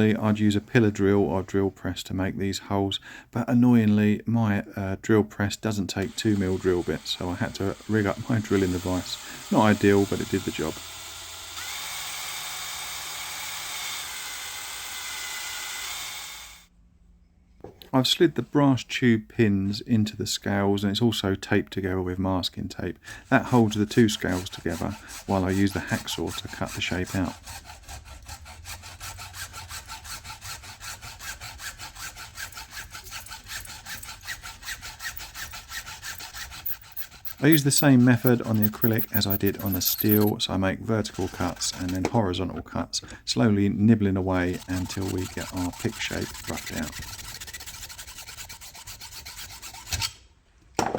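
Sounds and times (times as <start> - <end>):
hacksaw cutting acrylic: 5.9 - 16.2, 23.4 - 42.3, 44.2 - 50.3
drill motor whining: 6.0 - 16.6, 36.1 - 40.3.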